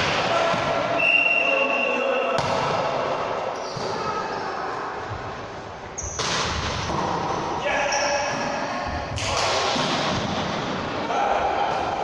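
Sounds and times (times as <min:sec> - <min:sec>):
hall din of players and onlookers: 0:00.0 - 0:12.0.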